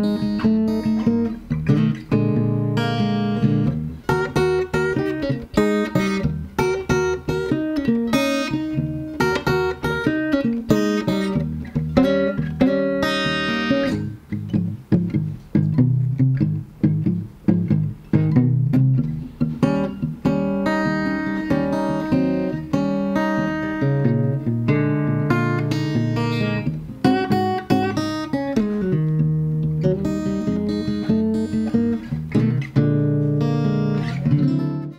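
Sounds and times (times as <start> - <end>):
acoustic guitar playing: 0.0 - 34.9.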